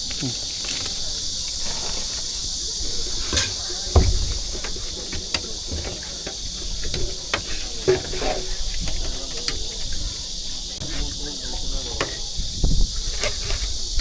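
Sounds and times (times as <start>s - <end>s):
steady high hiss: 0.0s - 14.0s
heavy thump: 3.3s - 4.9s.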